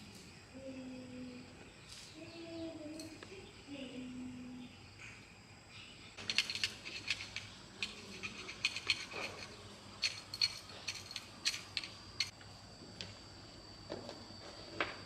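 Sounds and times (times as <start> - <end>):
small hard parts clicking and rattling: 6.2 - 12.4.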